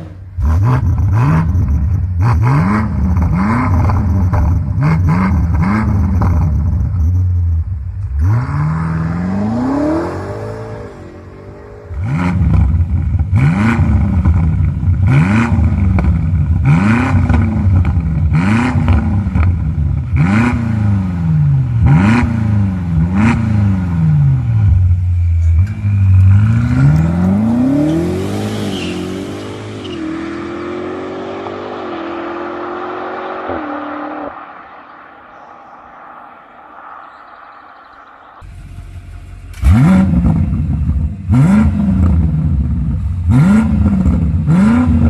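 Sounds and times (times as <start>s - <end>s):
car engine revving: 0.0s - 7.4s, 8.0s - 45.0s
car accelerating through gears: 8.2s - 14.2s, 25.6s - 35.8s.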